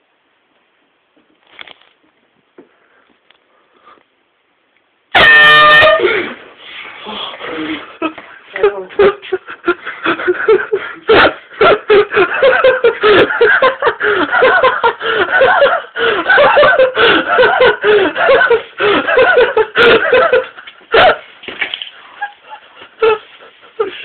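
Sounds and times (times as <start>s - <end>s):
loud sustained laughter: 9.0s - 21.3s.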